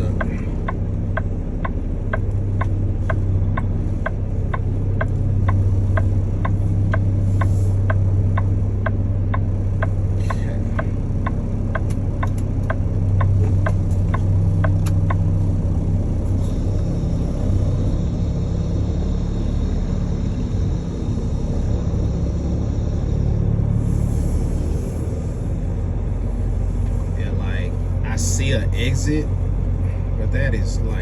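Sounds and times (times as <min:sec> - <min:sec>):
turn signal clicker ticking: 0:00.0 - 0:15.4
diesel truck engine running: 0:00.0 - 0:31.0.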